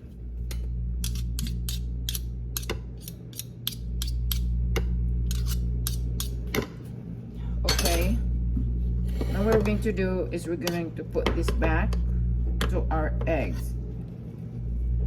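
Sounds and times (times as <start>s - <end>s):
steady low hum: 0.0s - 15.0s
utensil clicking against a bowl: 0.5s - 4.5s, 5.3s - 6.4s.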